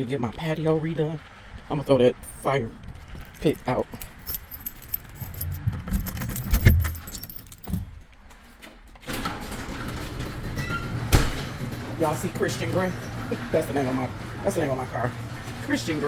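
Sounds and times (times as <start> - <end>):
steady background noise: 0.0 - 16.0
keys jangling: 3.1 - 8.1
knocks and clicks: 4.4 - 8.0.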